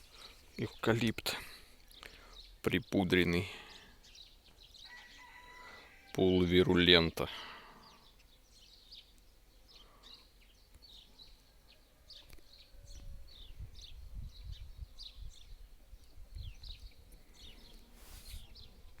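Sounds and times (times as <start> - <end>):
small songbirds chirping: 0.0 - 19.0
brief rustle: 17.8 - 18.6.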